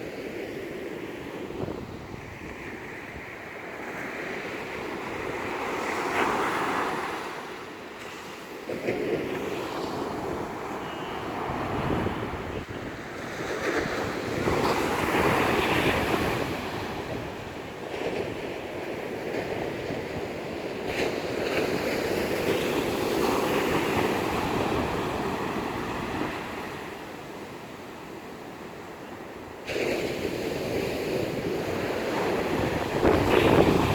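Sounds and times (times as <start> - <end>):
wind buffeting microphone: 1.3 - 3.7, 4.4 - 27.0, 29.8 - 33.9
surf breaking on shore: 29.6 - 33.9.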